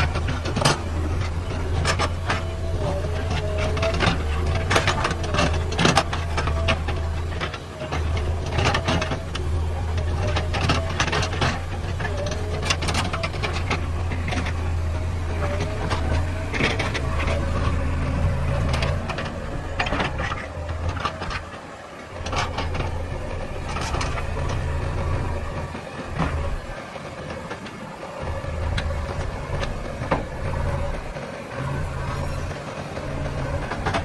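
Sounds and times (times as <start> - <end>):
digging gear clanking: 0.0 - 26.8
diesel engine running: 0.0 - 34.0.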